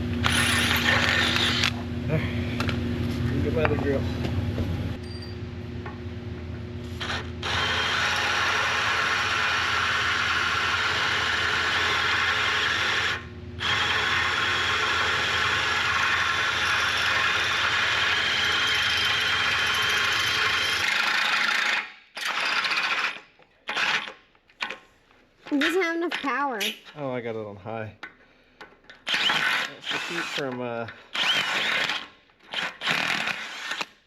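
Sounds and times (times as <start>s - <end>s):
electric drill grinding through steel: 0.2s - 1.8s, 6.9s - 24.2s, 29.0s - 34.0s.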